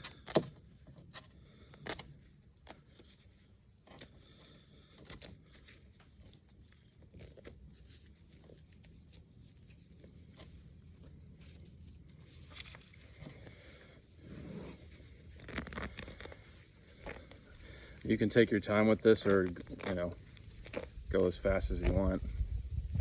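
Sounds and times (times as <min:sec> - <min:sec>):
feathers being pulled from skin: 0:11.7 - 0:18.1, 0:18.8 - 0:21.1.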